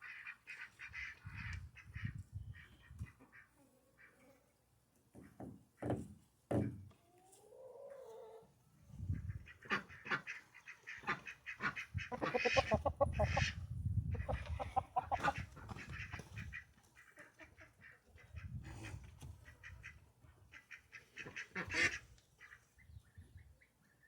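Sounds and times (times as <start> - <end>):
ducks quacking: 0.0 - 4.2, 9.1 - 22.7.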